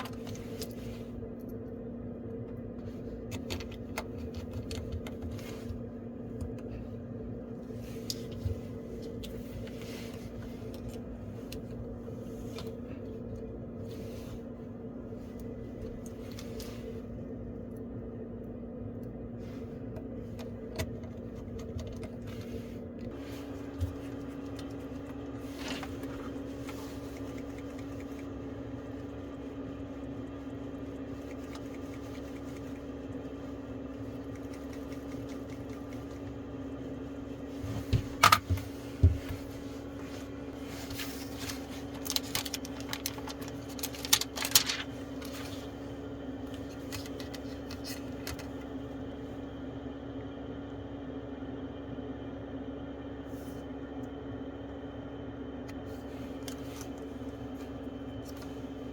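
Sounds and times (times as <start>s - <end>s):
steady mechanical hum: 0.0s - 58.9s.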